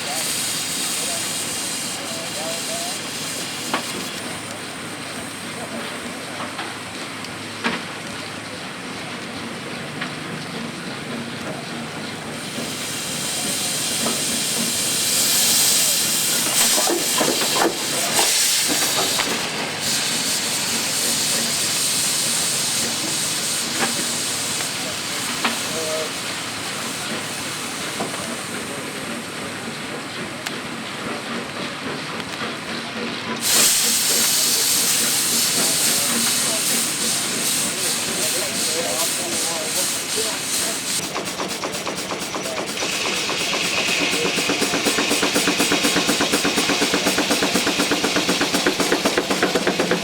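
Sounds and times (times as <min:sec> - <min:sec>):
high hiss: 0:00.0 - 0:05.7, 0:12.4 - 0:29.7, 0:33.4 - 0:50.0
sawmill machinery running: 0:32.1 - 0:50.0.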